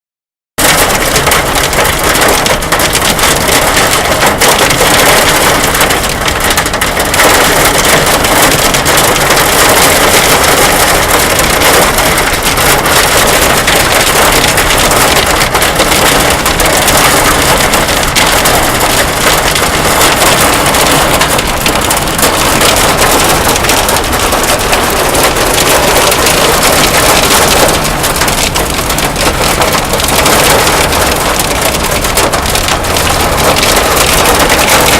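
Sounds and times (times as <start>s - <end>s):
hailstones clattering: 0.6s - 34.9s.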